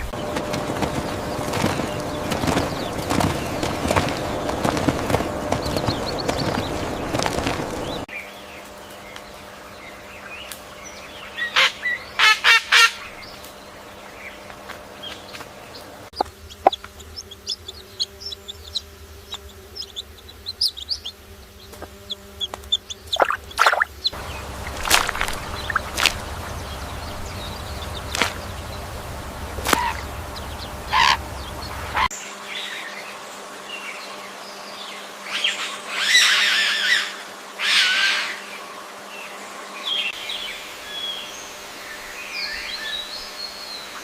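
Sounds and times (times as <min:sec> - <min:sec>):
chickens clucking: 0:00.0 - 0:08.1, 0:15.8 - 0:32.1.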